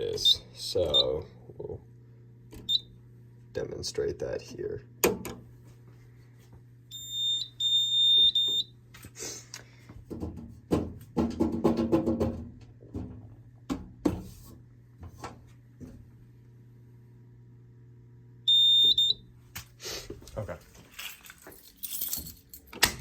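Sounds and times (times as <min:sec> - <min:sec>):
fire alarm horns high-pitched tone: 0:00.0 - 0:01.2, 0:06.9 - 0:08.7, 0:18.5 - 0:19.2.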